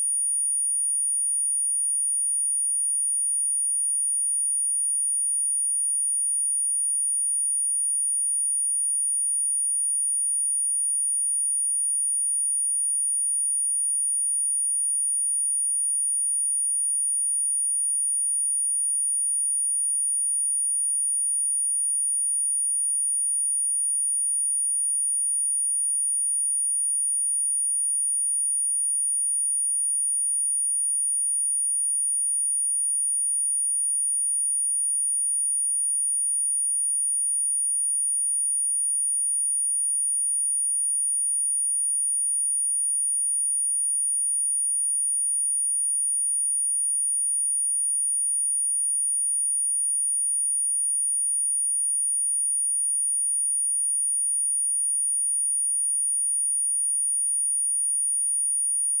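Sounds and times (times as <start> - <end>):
high-pitched sine test tone: 0.0 - 0.2, 48.6 - 59.0.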